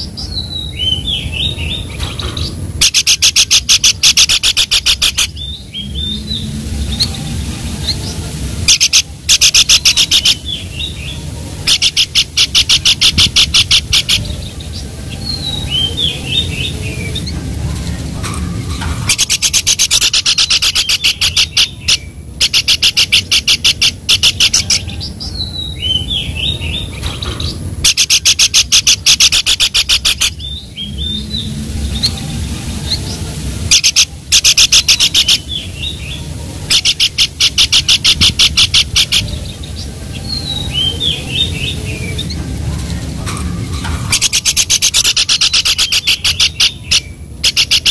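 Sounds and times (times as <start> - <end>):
steady low rumble: 0.0 - 47.8
bird calling rapid sharp notes: 19.0 - 24.8, 36.7 - 39.3, 43.8 - 47.9.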